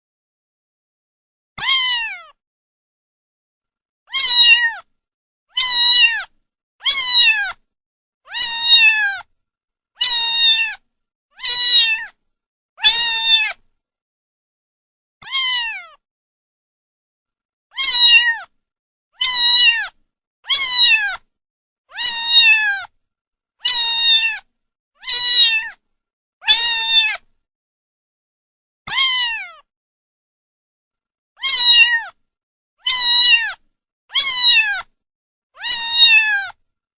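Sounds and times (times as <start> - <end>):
kitten meowing: 1.6 - 2.4, 4.1 - 4.9, 5.6 - 7.6, 8.3 - 9.3, 10.0 - 10.8, 11.4 - 12.2, 12.8 - 13.6, 15.2 - 16.0, 17.7 - 18.5, 19.2 - 21.3, 21.9 - 22.9, 23.6 - 25.8, 26.4 - 27.3, 28.9 - 29.7, 31.4 - 32.2, 32.8 - 34.9, 35.6 - 36.6.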